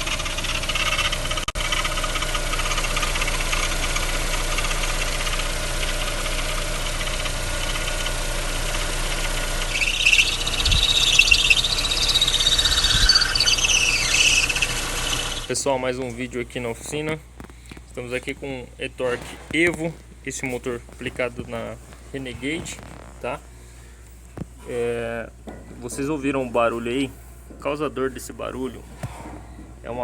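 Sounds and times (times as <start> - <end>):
car engine running: 0.0 - 15.5
high-pitched belt chirping: 9.6 - 15.5.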